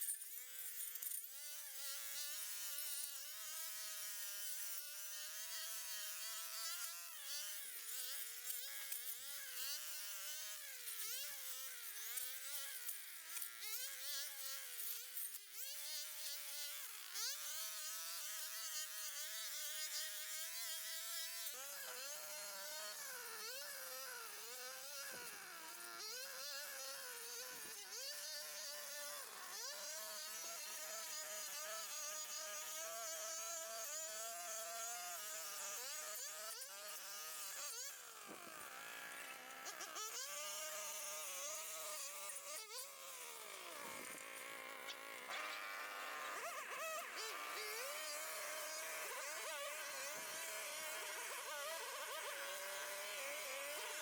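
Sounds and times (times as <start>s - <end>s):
small petrol engine whining: 43.6s - 49.0s.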